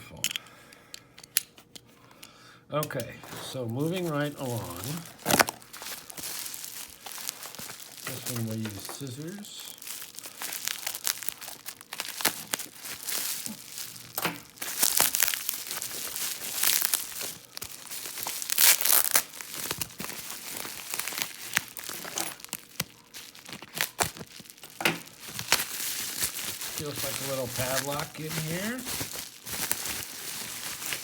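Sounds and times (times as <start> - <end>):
packaging crinkling and tearing: 3.2 - 31.0.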